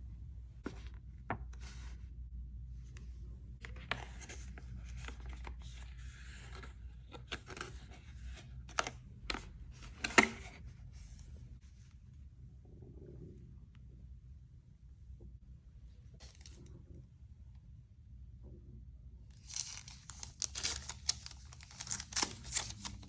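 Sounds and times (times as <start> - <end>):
packaging rustling and scraping: 19.4 - 23.0.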